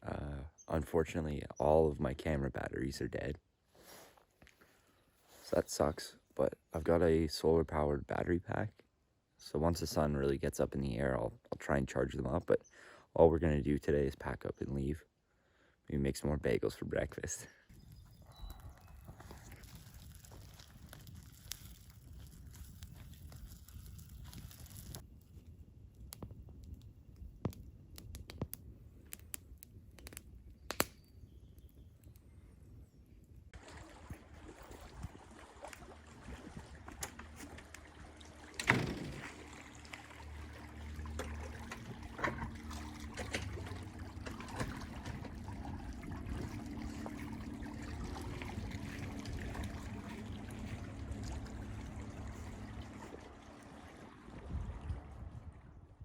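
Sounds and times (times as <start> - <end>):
water splashing and trickling: 17.7 - 25.5, 33.5 - 56.0.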